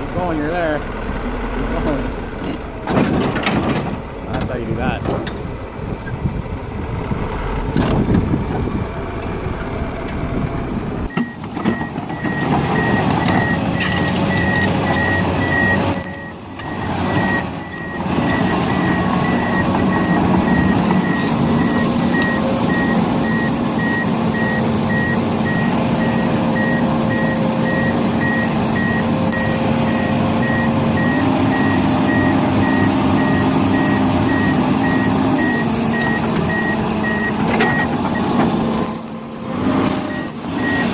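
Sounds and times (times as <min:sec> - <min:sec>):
vehicle engine running: 0:00.0 - 0:11.2
rough machine noise: 0:06.9 - 0:40.9
reversing alarm beeping: 0:11.1 - 0:38.3, 0:40.0 - 0:40.9.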